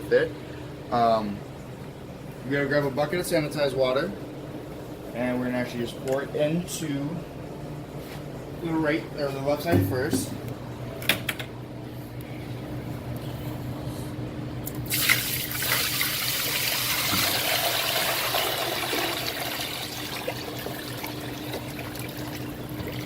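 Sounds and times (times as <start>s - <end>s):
constant low hum: 0.0s - 17.4s
water pouring from a bucket: 14.9s - 23.0s.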